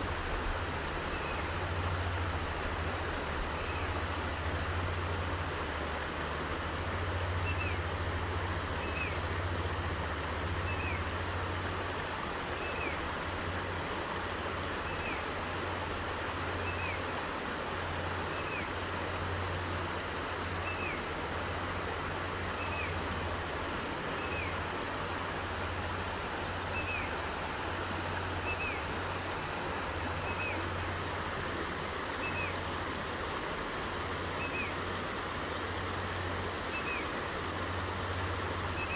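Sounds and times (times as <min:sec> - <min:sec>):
stream rushing: 0:00.0 - 0:38.9.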